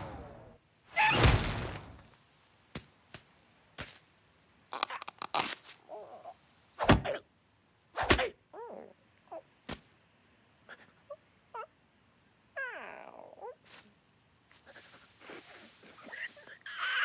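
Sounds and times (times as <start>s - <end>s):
loud sharp cartoon hit: 1.0s - 2.0s.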